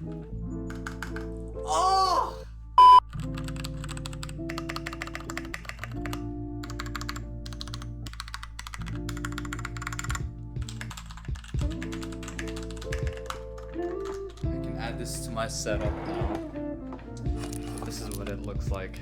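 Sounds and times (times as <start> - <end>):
background music with held notes: 0.0 - 19.0
mechanical keyboard keys clicking: 0.6 - 1.4, 3.1 - 14.5.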